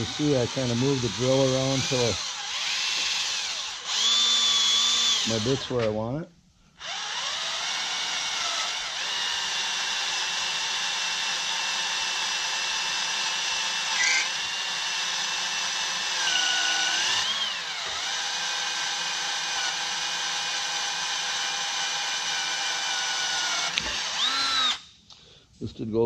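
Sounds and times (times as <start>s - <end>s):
drill bit screech: 0.0s - 5.8s, 13.8s - 14.6s, 16.2s - 18.1s, 22.9s - 24.8s
hand drill whining: 0.0s - 5.9s, 6.8s - 24.9s.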